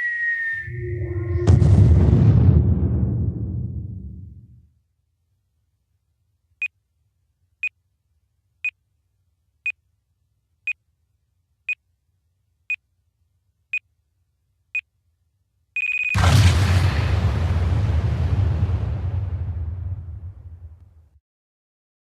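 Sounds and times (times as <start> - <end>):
explosion rumble: 0.7 - 4.6, 16.2 - 21.1
high electronic beeps: 15.8 - 16.2.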